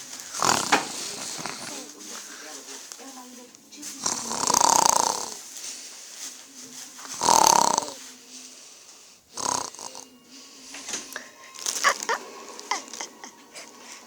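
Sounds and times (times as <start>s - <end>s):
man snoring: 0.0s - 1.9s, 4.0s - 5.4s, 7.1s - 8.1s, 9.3s - 11.0s
faint breathing: 0.0s - 14.0s.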